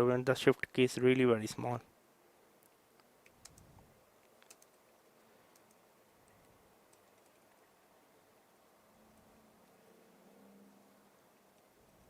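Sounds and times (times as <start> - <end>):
keyboard key clicks: 3.2 - 4.8.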